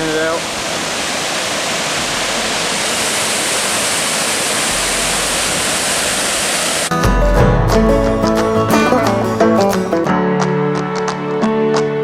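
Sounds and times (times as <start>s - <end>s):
waterfall rushing: 0.0s - 6.9s
plucked-string bluegrass music: 6.9s - 12.0s.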